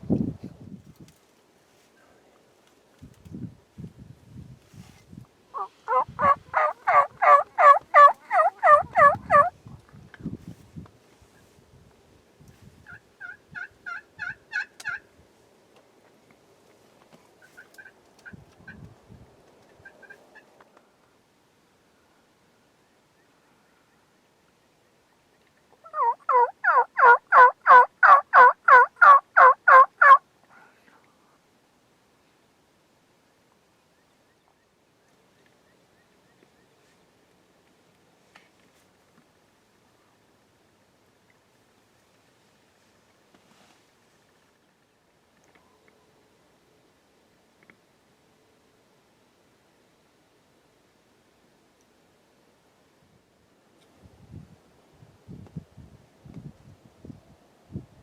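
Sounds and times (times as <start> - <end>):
turkey calling: 5.6 - 9.5, 12.9 - 15.0, 25.8 - 30.2.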